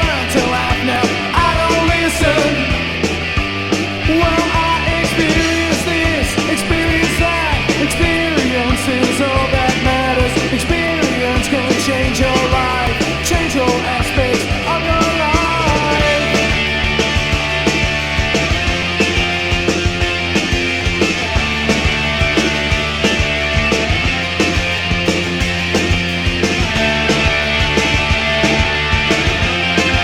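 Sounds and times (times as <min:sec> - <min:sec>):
driving drum beat: 0:00.0 - 0:30.0
rock band playing: 0:00.0 - 0:30.0.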